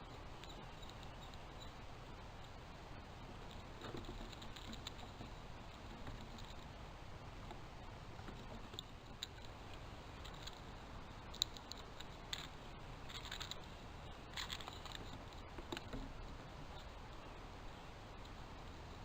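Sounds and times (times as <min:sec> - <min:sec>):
animals scratching and scrabbling: 0:03.3 - 0:06.8, 0:08.1 - 0:17.0.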